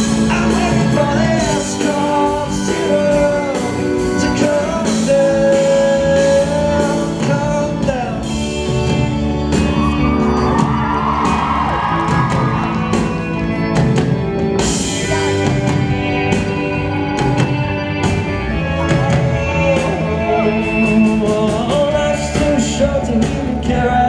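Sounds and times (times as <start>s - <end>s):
live rock band playing: 0.0s - 24.0s
audience whooping and cheering: 9.4s - 14.0s.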